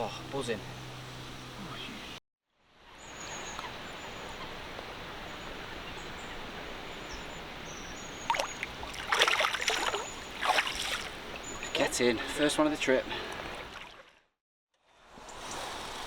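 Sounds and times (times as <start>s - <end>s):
wind: 0.0s - 16.0s
water noise: 3.0s - 14.2s.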